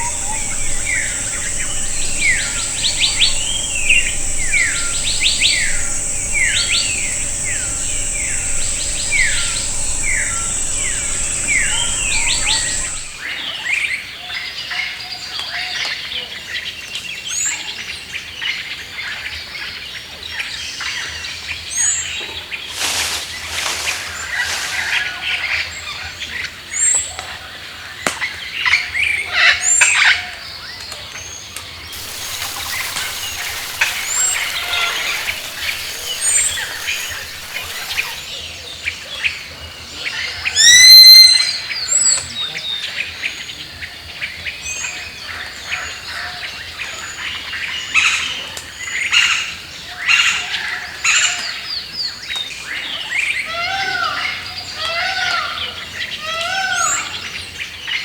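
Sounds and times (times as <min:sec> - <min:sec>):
birds chirping: 0:00.0 - 0:13.2, 0:32.0 - 0:38.4
insect drone: 0:00.0 - 0:13.3, 0:32.0 - 0:38.4.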